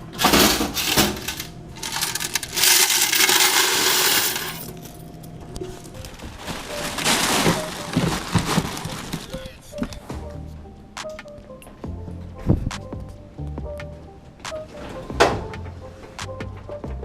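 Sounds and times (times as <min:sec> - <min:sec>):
coins pouring and jingling: 0:00.8 - 0:05.0.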